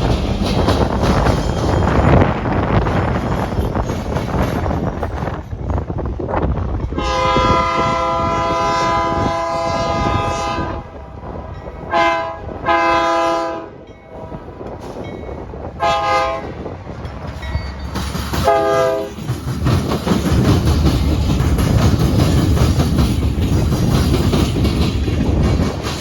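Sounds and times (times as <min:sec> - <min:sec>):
train rumbling past: 0:00.0 - 0:26.0
locomotive air horn: 0:07.0 - 0:10.9, 0:11.9 - 0:13.8, 0:15.8 - 0:16.6, 0:18.4 - 0:19.1.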